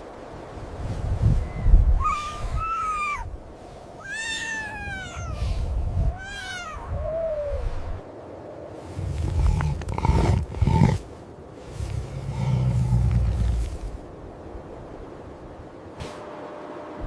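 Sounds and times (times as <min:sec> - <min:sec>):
tiger cub mewing: 0:01.9 - 0:03.4, 0:04.0 - 0:07.7, 0:09.0 - 0:11.1, 0:11.7 - 0:13.9.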